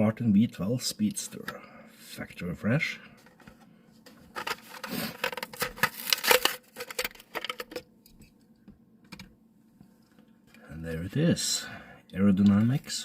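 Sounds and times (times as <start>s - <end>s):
plastic packaging torn open: 4.4s - 7.8s.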